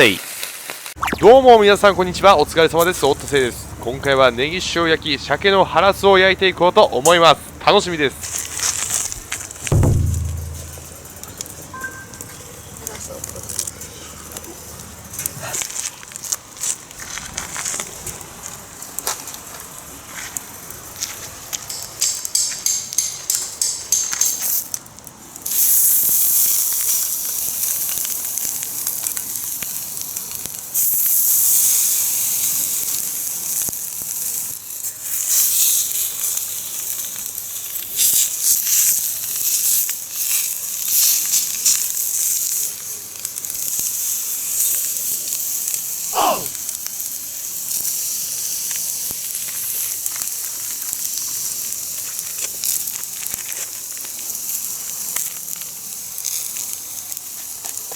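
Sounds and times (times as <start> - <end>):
fish sizzling in a pan: 0.0 - 1.0, 25.4 - 57.9
wood fire crackling: 0.0 - 25.5, 26.5 - 57.9.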